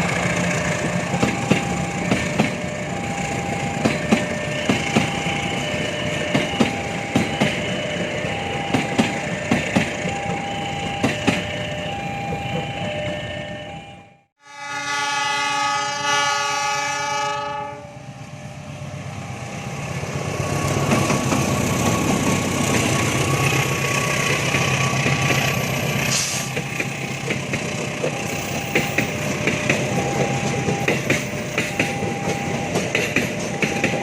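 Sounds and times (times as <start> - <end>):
passing train rumble: 0.0 - 34.0
train horn blowing a chord: 14.4 - 18.0.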